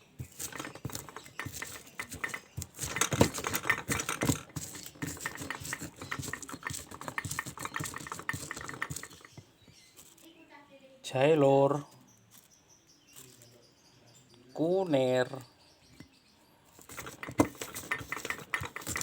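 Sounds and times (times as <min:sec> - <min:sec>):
kitchen utensils clicking and tapping: 0:00.0 - 0:09.5, 0:16.8 - 0:19.0.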